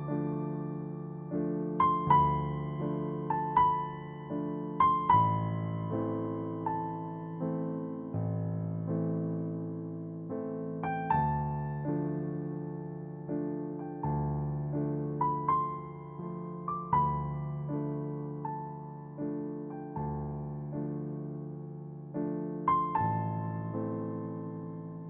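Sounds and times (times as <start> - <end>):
gentle piano melody: 0.0 - 25.0.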